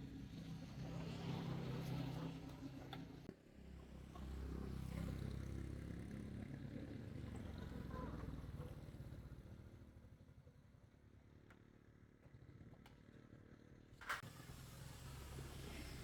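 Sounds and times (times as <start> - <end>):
small motorcycle engine running: 13.6 - 16.0.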